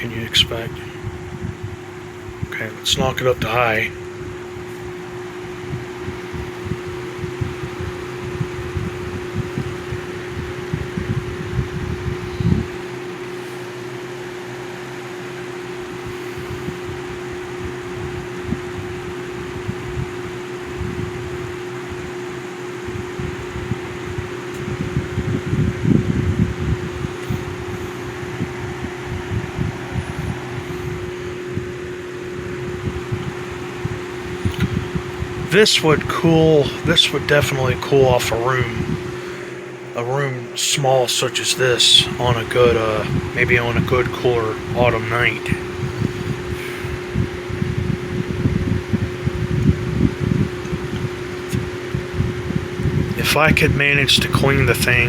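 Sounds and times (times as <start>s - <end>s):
box fan rushing air: 0.0s - 55.0s
fan motor hum: 0.0s - 55.0s
low rumbles: 22.9s - 55.0s.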